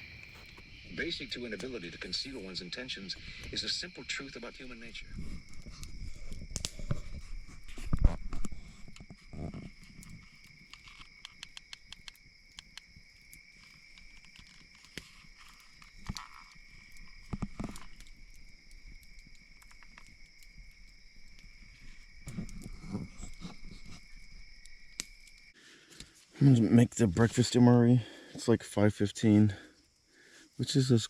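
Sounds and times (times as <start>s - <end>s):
high-pitched insect chorus: 0.0s - 31.0s.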